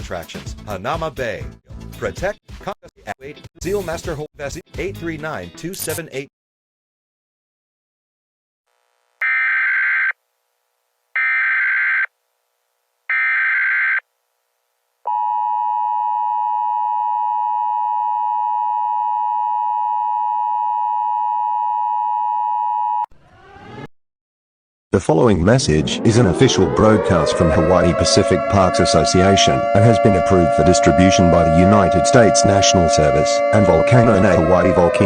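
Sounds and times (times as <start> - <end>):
steady alert tone: 25.5 - 35.0
faint sweeping sound: 25.6 - 35.0.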